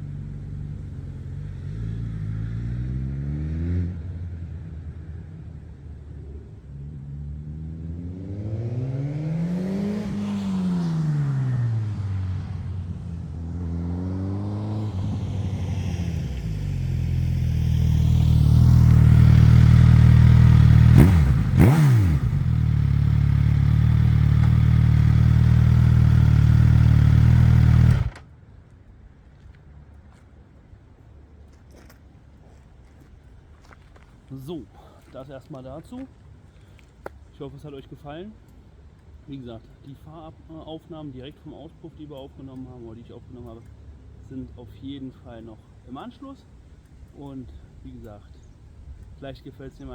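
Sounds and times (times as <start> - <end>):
motorcycle engine revving: 0.0 - 4.4, 6.9 - 28.2.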